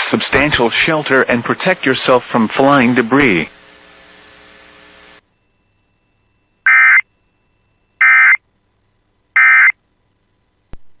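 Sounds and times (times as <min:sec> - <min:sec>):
harsh electronic data bursts: 0:06.6 - 0:07.0, 0:08.0 - 0:08.4, 0:09.4 - 0:09.7.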